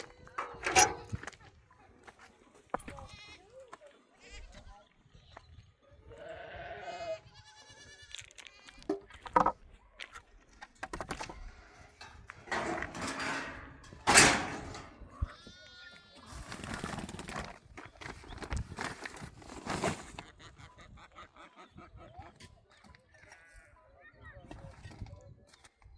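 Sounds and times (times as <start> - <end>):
livestock bleating: 6.1 - 8.8, 15.1 - 16.3
rustling: 12.0 - 15.0.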